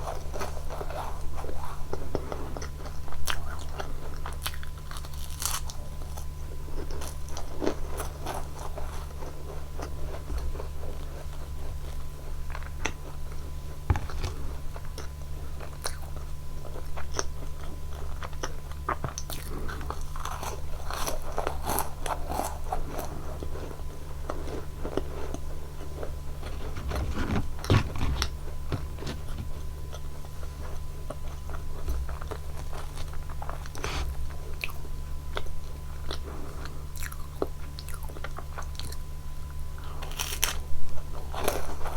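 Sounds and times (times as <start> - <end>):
crunchy biscuit chewing: 0.0 - 39.0
low electrical hum: 0.0 - 41.9.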